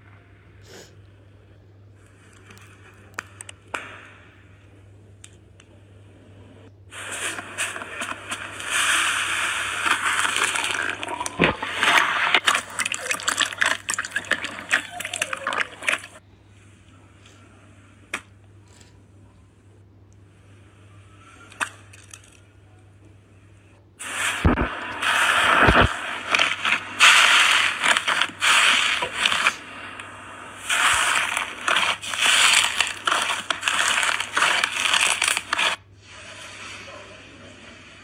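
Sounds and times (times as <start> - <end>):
slime squeezed crackling and popping: 9.8 - 16.2, 24.4 - 35.8.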